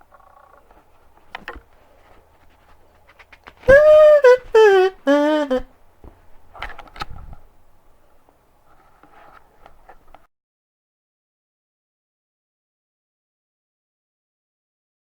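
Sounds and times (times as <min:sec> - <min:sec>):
kazoo buzzing: 0:03.7 - 0:05.6.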